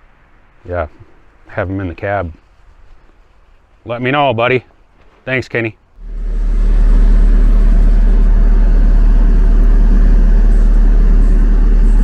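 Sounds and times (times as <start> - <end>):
diesel engine droning: 6.0 - 12.0.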